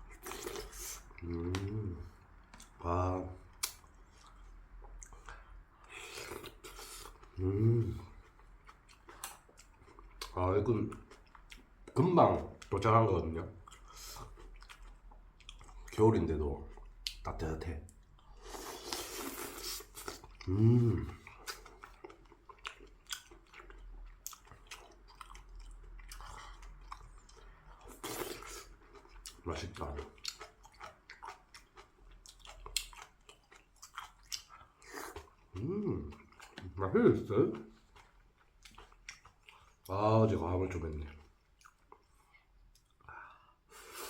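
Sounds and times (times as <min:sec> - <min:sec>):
chewing and wet mouth noises: 0:00.0 - 0:44.0
wet mouth smacks and clicks: 0:03.6 - 0:03.8
person humming mmm: 0:07.4 - 0:08.1, 0:20.4 - 0:21.2, 0:35.6 - 0:36.2.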